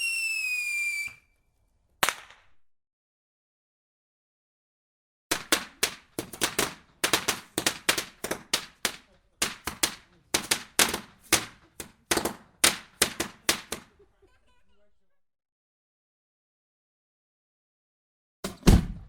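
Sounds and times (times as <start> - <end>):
fireworks bangs: 5.3 - 14.0.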